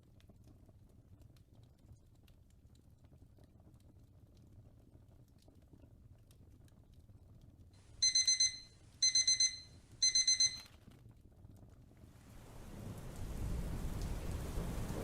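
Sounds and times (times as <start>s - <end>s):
faint fireplace crackle: 0.0s - 15.0s
digital timer beeping: 8.0s - 10.6s.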